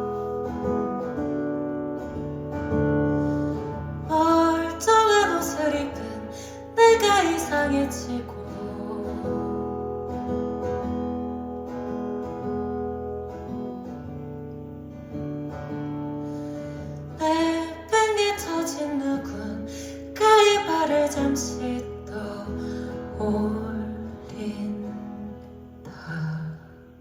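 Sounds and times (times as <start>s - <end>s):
acoustic guitar chords: 0.0s - 27.0s.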